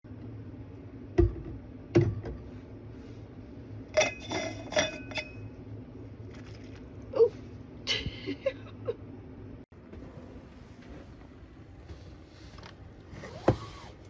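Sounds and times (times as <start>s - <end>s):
steady low hum: 0.1s - 14.0s
dishes clinking: 4.0s - 5.4s.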